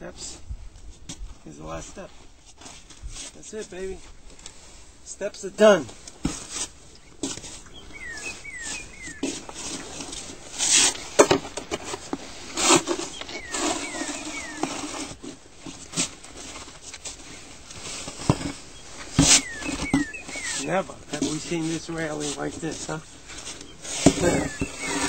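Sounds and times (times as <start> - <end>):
snow shovel scraping snow: 1.9 - 25.0
bird chirping: 6.8 - 10.5, 12.5 - 15.3, 17.2 - 25.0.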